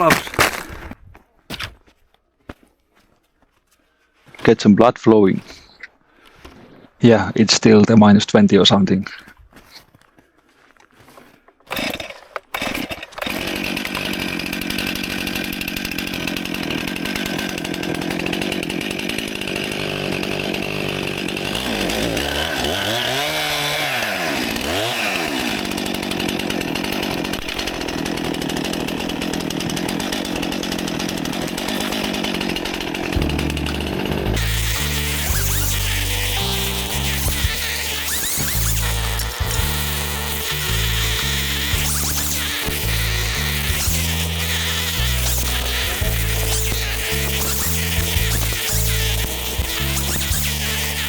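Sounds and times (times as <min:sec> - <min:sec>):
chainsaw cutting wood: 0:00.0 - 0:01.0, 0:11.6 - 0:51.0.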